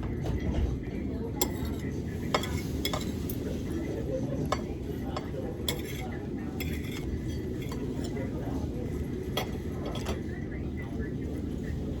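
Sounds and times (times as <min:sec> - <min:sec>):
cutlery and dishes clinking: 0:01.4 - 0:03.6, 0:04.4 - 0:08.3, 0:09.3 - 0:10.2.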